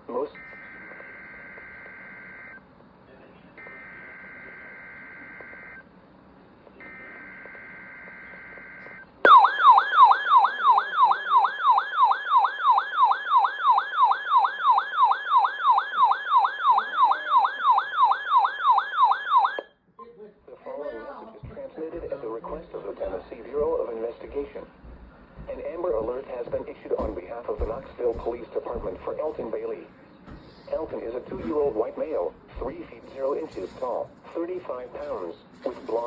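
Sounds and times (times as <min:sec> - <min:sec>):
warbling attention tone: 0:08.6 - 0:14.8.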